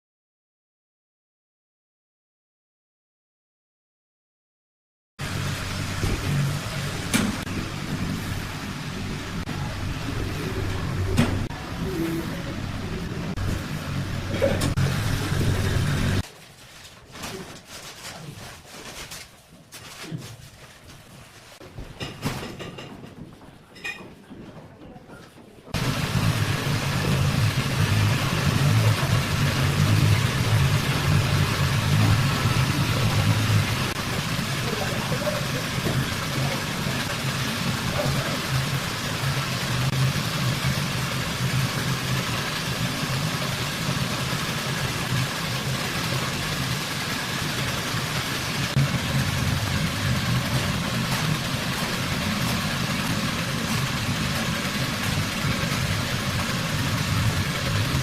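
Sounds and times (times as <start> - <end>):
steady mechanical drone: 5.2 - 16.2, 25.7 - 58.0.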